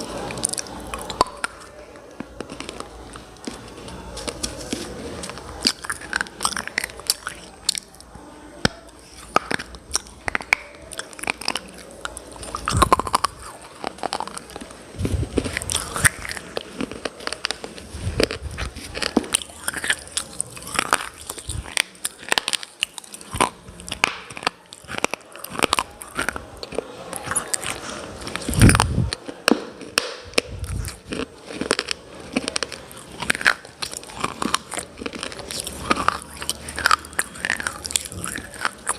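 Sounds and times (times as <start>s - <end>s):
crunching of chewing hard pieces: 0.0s - 38.9s.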